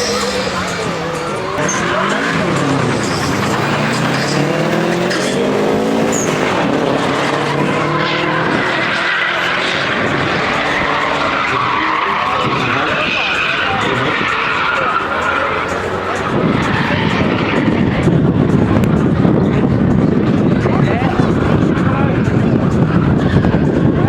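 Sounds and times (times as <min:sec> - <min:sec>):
tyres squealing: 0:00.0 - 0:19.1
car engine revving hard: 0:00.0 - 0:24.0.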